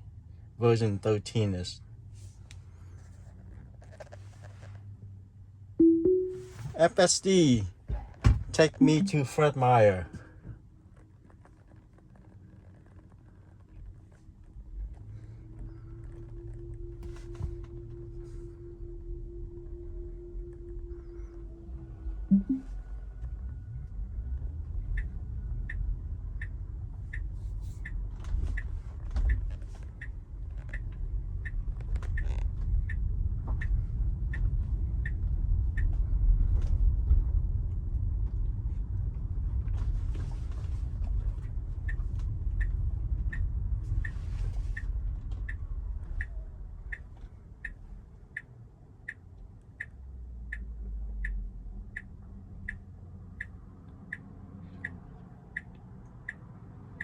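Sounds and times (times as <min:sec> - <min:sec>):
road and tyre rumble: 0:00.0 - 0:05.8, 0:06.6 - 0:57.0
turn signal clicking: 0:41.4 - 0:57.0.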